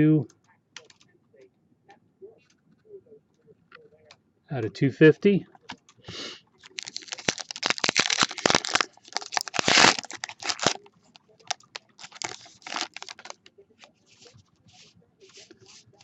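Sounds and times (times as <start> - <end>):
cards being handled: 6.6 - 10.8, 11.4 - 16.0
card pack wrapper crinkling: 6.6 - 13.4.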